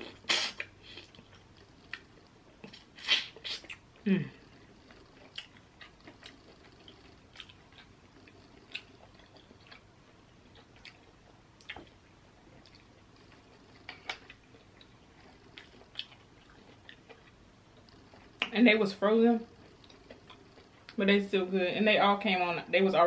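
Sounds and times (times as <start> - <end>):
wet mouth sounds: 0.0 - 1.4, 2.6 - 9.8
person chewing: 0.0 - 18.6, 19.5 - 21.0.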